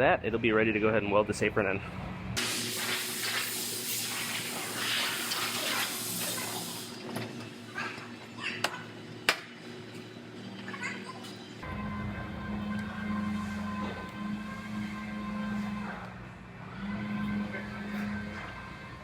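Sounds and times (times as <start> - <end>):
rushing hiss: 2.4 - 7.0.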